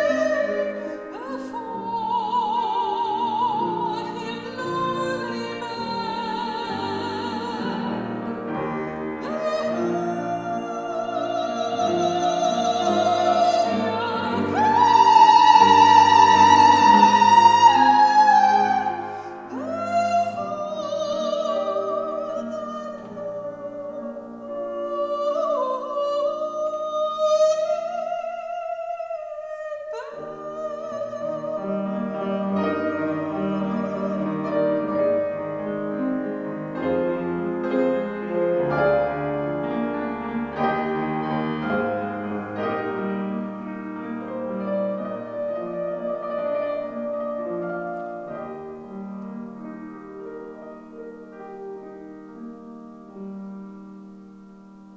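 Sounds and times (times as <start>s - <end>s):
soprano singing operatically: 0.0s - 36.2s
piano accompaniment: 0.0s - 54.9s.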